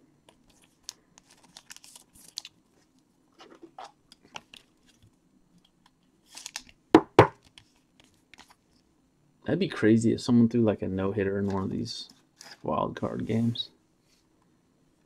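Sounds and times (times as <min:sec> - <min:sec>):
wrappers crinkling and tearing: 0:01.2 - 0:02.6, 0:06.2 - 0:06.8
sharp knocks: 0:07.0 - 0:07.4.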